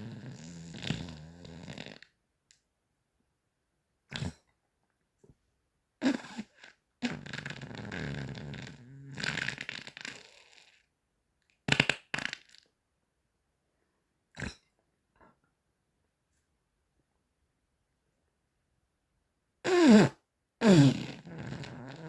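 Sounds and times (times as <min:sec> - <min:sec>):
fart noises: 0:00.0 - 0:02.2, 0:04.1 - 0:04.5, 0:06.0 - 0:10.9, 0:11.6 - 0:12.7, 0:14.4 - 0:14.7, 0:19.6 - 0:22.0.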